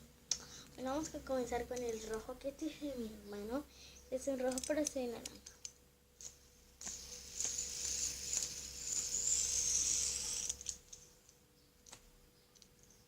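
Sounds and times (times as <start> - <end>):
finger clicks handling spinner: 4.4 - 11.0
fidget spinner whirring: 6.2 - 11.1.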